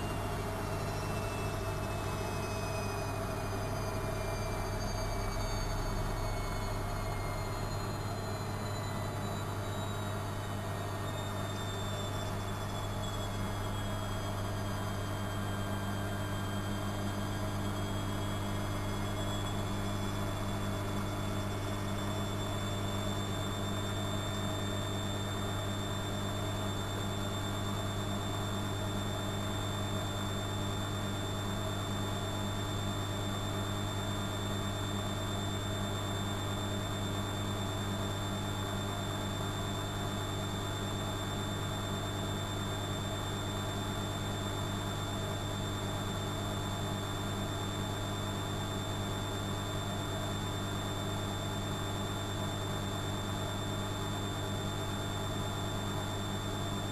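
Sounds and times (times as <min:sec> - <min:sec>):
washing machine humming: 0:00.0 - 0:15.5
faint high whine: 0:00.0 - 0:56.9.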